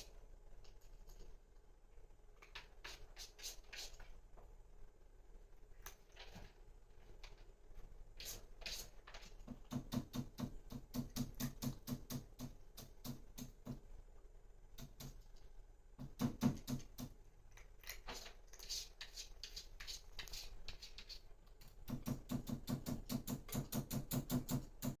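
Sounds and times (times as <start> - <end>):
cat scratching in litter: 2.5 - 4.1, 8.2 - 10.3, 17.8 - 24.0.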